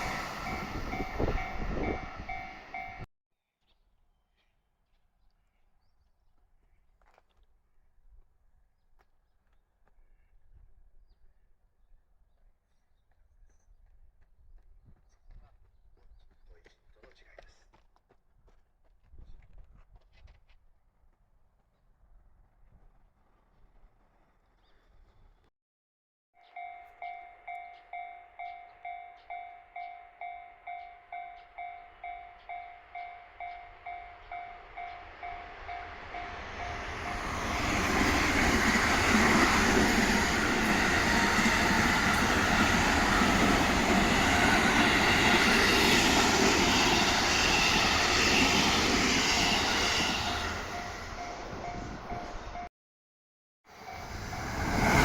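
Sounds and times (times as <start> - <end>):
level crossing warning bell: 0.0 - 3.1, 26.4 - 37.3
passing train running noise: 0.0 - 3.1, 26.5 - 52.7, 53.7 - 55.0.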